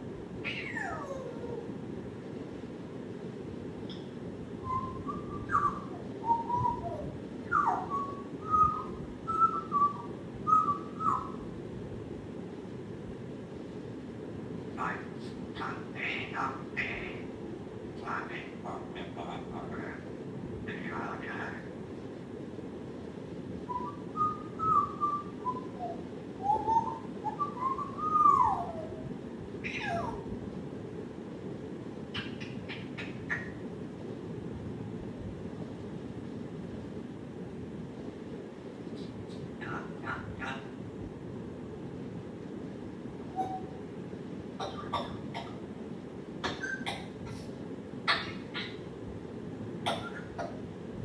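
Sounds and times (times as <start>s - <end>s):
swooping whistles: 4.6s - 11.5s, 23.7s - 29.0s, 43.3s - 43.8s.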